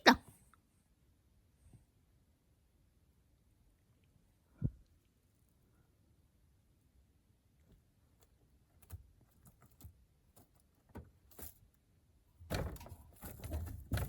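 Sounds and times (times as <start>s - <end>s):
rabbit scuffling and scrabbling: 7.5s - 14.0s.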